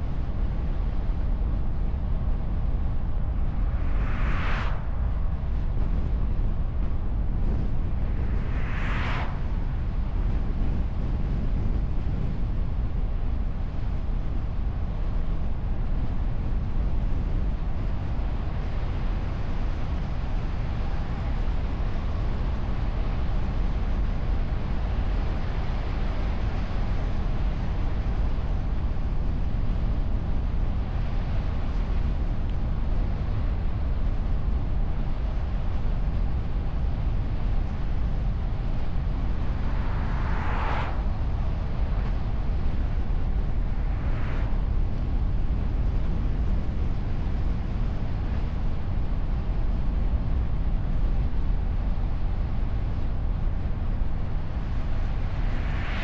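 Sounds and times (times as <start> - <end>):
wind noise on microphone: 0.0 - 56.0
brief whoosh: 39.2 - 44.8.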